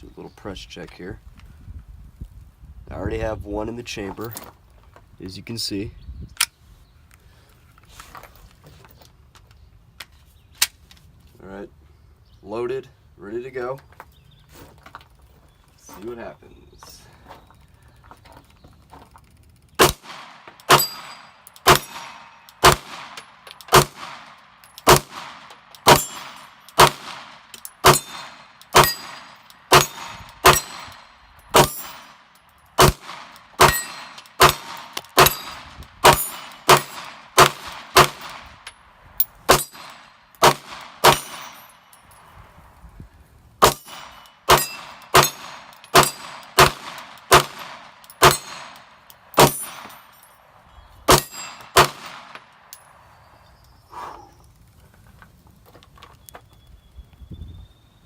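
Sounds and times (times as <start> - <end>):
pistol shots: 19.8 - 32.2, 32.8 - 38.6, 39.5 - 41.8, 43.6 - 50.0, 51.1 - 52.4.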